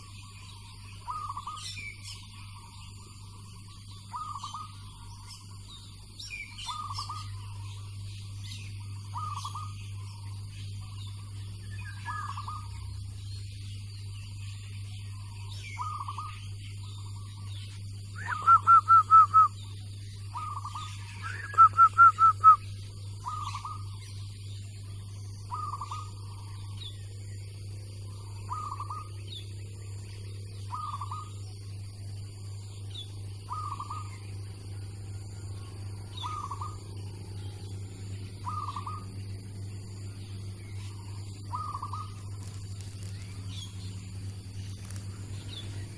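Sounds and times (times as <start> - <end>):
faint higher chirps: 0.0 - 45.9
steady low hum: 0.0 - 45.9
doves cooing: 1.0 - 14.2, 15.0 - 24.0, 25.4 - 26.8, 27.4 - 31.6, 33.2 - 34.5, 35.5 - 45.9.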